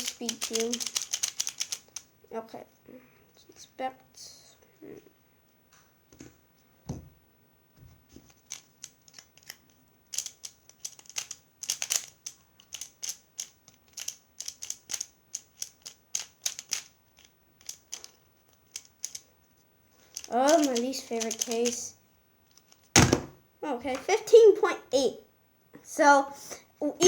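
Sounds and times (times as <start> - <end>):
puzzle cube clicking: 0.0 - 2.1, 8.3 - 19.2, 20.1 - 21.8.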